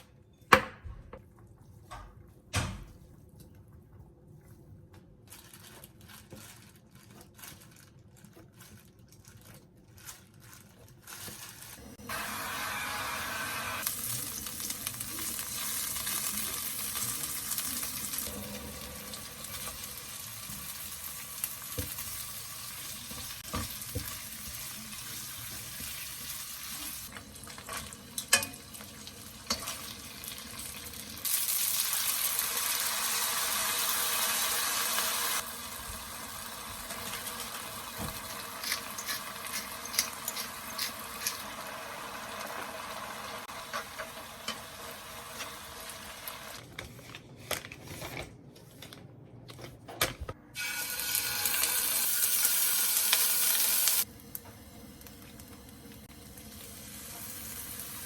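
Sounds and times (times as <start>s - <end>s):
food sizzling in a frying pan: 11.7s - 46.6s, 50.6s - 58.0s.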